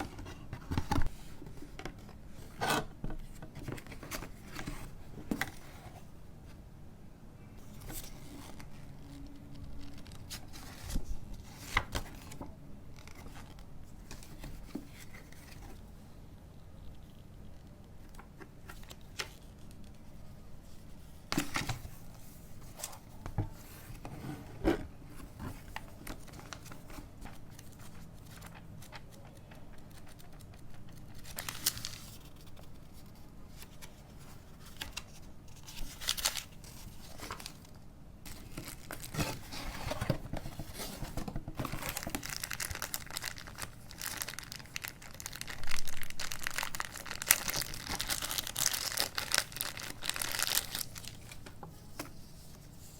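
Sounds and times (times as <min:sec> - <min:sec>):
wrapping crinkling and tearing: 0:33.6 - 0:37.7, 0:38.3 - 0:40.9, 0:41.6 - 0:51.6.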